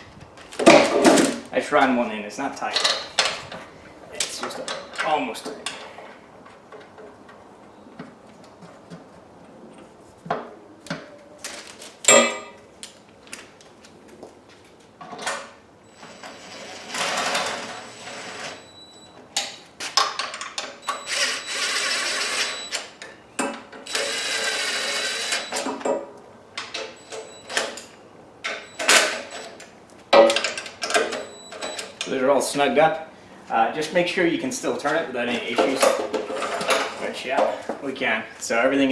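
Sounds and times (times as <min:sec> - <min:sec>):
power drill driving bolts: 0:16.0 - 0:18.6, 0:20.8 - 0:22.9, 0:23.8 - 0:25.8
clicks and knocks of tools: 0:26.6 - 0:32.1.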